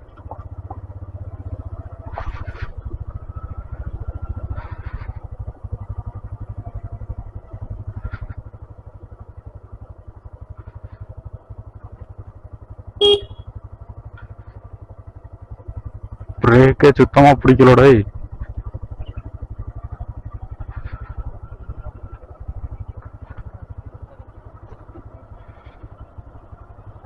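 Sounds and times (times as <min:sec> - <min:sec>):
motorcycle engine running: 0:00.0 - 0:27.0
short loud beep: 0:13.0 - 0:13.4.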